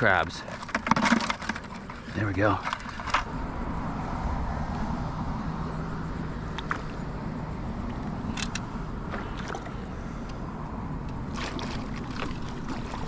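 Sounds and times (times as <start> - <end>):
water sloshing and splashing: 0.0 - 3.4, 8.3 - 13.0
steady low rumble: 3.0 - 13.0.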